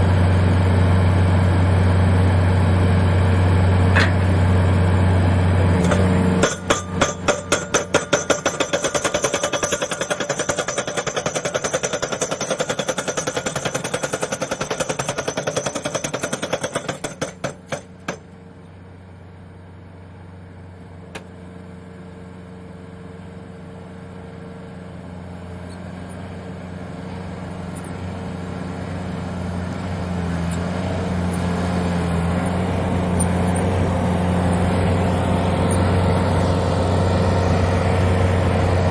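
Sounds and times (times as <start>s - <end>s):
machine engine running: 0.0s - 18.3s, 25.2s - 38.9s
pile driver hammer blows: 3.9s - 4.4s, 5.8s - 18.4s.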